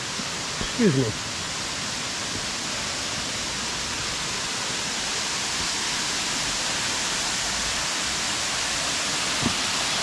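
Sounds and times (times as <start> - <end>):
waterfall rushing: 0.0 - 10.0.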